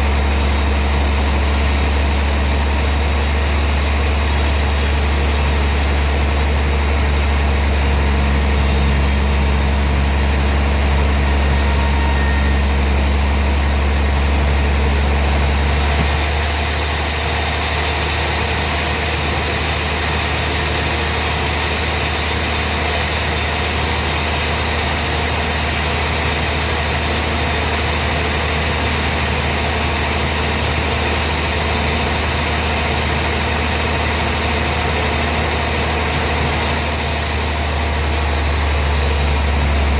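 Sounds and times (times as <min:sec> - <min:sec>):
sawmill machinery deep hum: 0:00.0 - 0:39.9.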